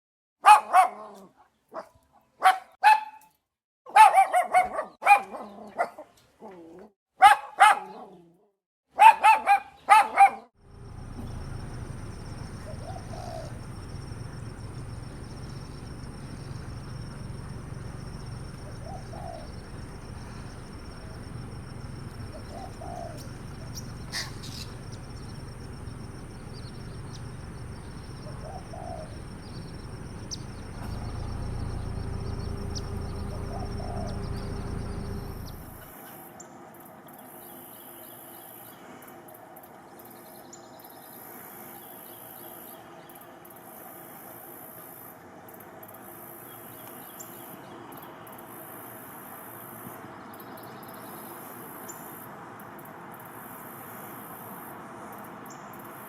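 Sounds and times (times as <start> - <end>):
outdoor background: 0.4 - 56.0
animal calling: 9.0 - 35.9
faint high whine: 10.6 - 35.8.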